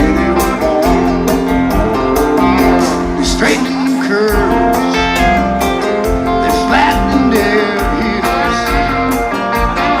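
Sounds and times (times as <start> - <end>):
country rock band music: 0.0 - 10.0
person singing: 0.0 - 10.0.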